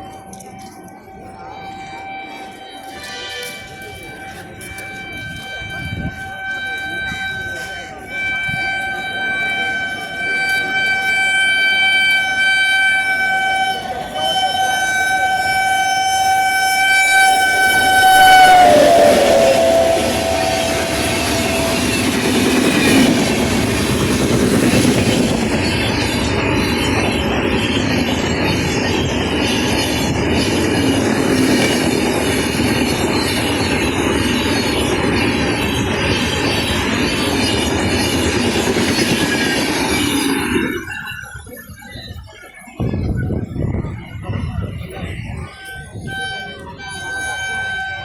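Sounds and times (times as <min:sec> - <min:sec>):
locomotive horn honking: 0:01.7 - 0:26.9, 0:45.6 - 0:48.0
train wheels clattering: 0:09.1 - 0:41.9.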